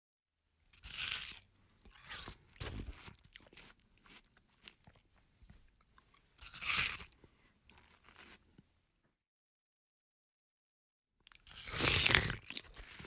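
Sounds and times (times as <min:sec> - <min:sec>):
person chewing watermelon: 0:00.7 - 0:08.7, 0:11.3 - 0:13.0.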